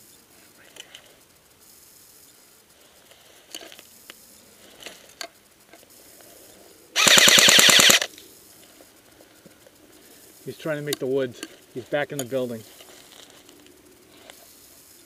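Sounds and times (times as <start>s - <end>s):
airsoft gun full-auto burst: 7.0s - 8.1s.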